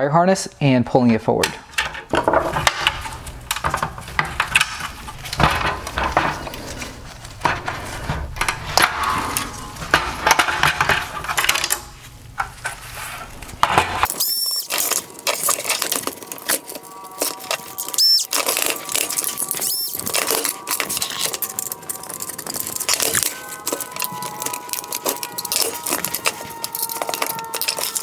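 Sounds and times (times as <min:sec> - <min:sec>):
background hum: 0:00.4 - 0:28.0
plastic parts clicking and clattering: 0:01.4 - 0:12.8, 0:13.4 - 0:28.0
short high whines: 0:17.8 - 0:18.3.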